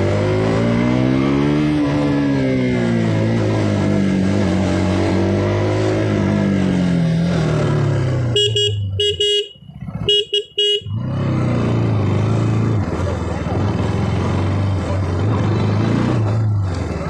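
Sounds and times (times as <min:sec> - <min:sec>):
motorcycle engine cruising: 0:00.0 - 0:17.0
horn beeps: 0:08.2 - 0:11.2.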